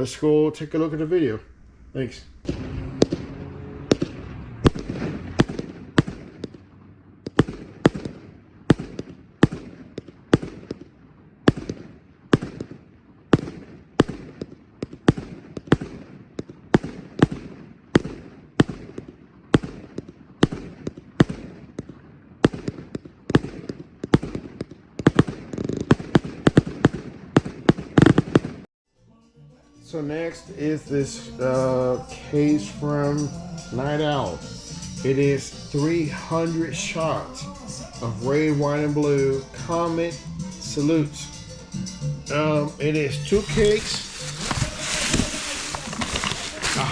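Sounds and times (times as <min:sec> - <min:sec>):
fireworks salute reports: 0:00.0 - 0:03.1, 0:29.8 - 0:46.9.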